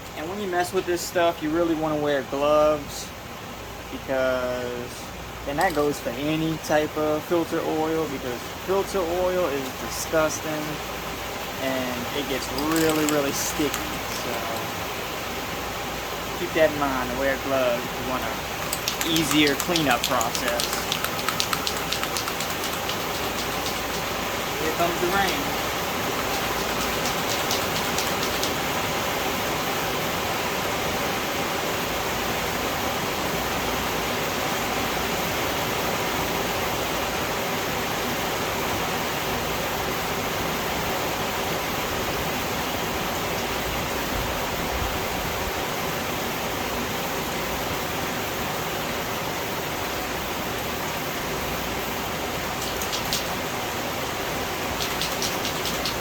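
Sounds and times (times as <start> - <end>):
faint clicks: 5.6 - 5.9, 12.4 - 14.7, 18.5 - 28.6, 52.6 - 53.4, 54.6 - 56.0
steady rain falling: 5.6 - 56.0.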